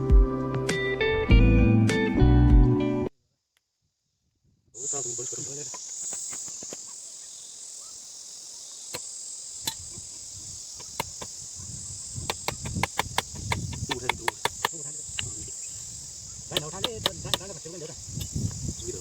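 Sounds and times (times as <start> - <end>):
insects chirring: 3.1 - 19.0
sharp taps: 10.8 - 11.4, 12.2 - 15.3, 16.5 - 17.5.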